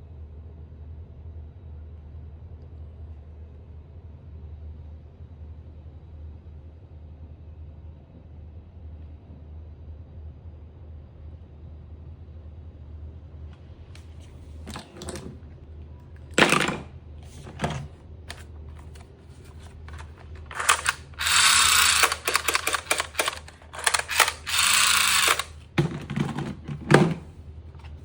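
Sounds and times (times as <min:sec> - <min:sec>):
plastic toy blaster clicks: 0:19.9 - 0:25.6.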